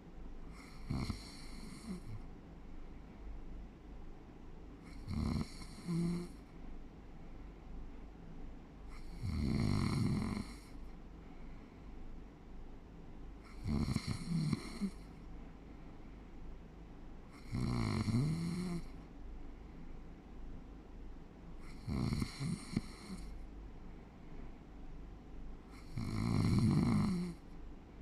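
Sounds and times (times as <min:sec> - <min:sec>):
person snoring: 0:00.6 - 0:02.2, 0:04.9 - 0:06.4, 0:08.9 - 0:10.7, 0:13.5 - 0:15.0, 0:17.4 - 0:18.9, 0:21.6 - 0:23.2, 0:25.8 - 0:27.4.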